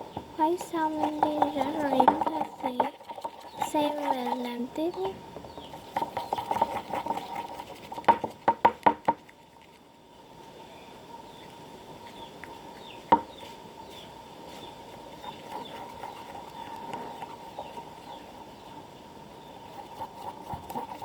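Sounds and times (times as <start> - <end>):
faint bird chirps: 10.0 - 21.0.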